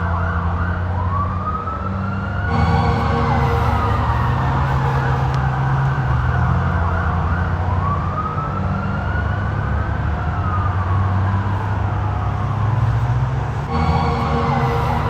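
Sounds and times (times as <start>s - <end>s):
police siren wailing: 0.0s - 15.0s
low rumble: 2.5s - 6.2s, 13.7s - 15.0s.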